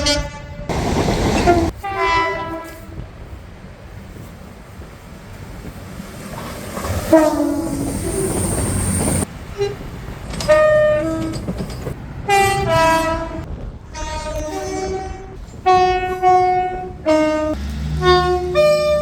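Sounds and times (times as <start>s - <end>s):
two-tone train horn: 0.0s - 0.7s, 1.4s - 3.3s, 5.9s - 9.8s, 12.3s - 19.0s
train rumble: 0.0s - 19.0s.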